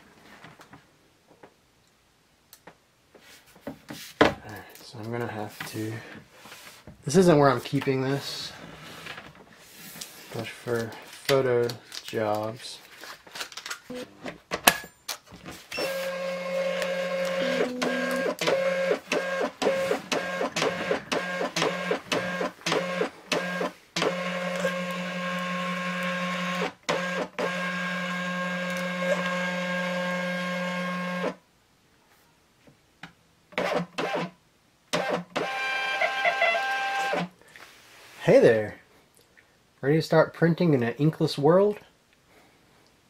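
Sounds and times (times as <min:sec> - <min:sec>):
label printer motor whirring: 0:15.8 - 0:31.3.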